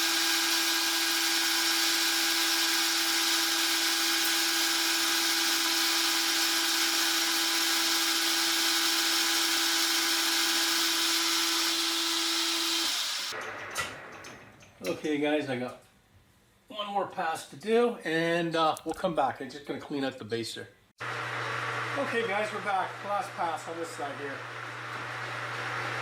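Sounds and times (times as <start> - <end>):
metal lathe motor whine: 0.0 - 13.3
cutting hiss: 10.2 - 13.3.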